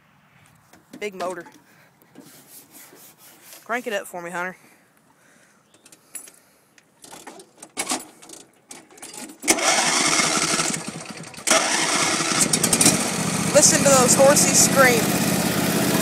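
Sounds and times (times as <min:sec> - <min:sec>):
riding lawn mower engine running: 0:08.7 - 0:16.0.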